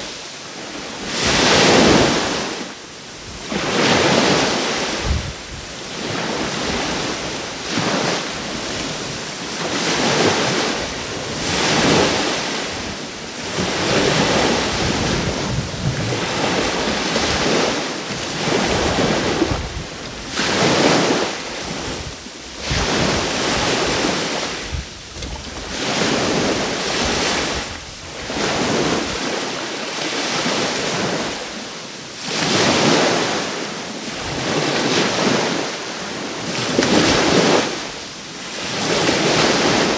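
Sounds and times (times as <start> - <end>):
small waves breaking on shore: 0.0 - 39.9
wind buffeting microphone: 3.2 - 9.2, 10.1 - 29.3.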